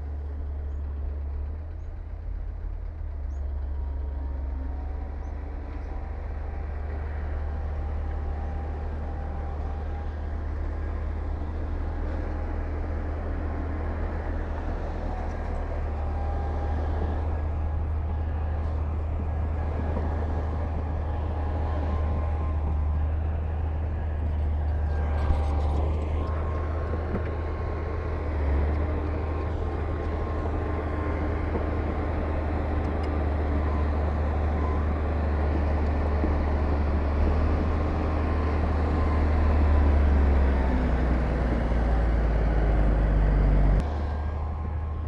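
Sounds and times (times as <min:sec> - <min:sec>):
diesel machinery rumbling: 0:00.0 - 0:45.0.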